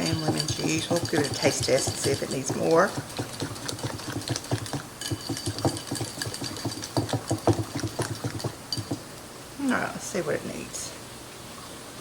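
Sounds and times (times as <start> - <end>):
utensil stirring in a bowl: 0.0 - 9.2.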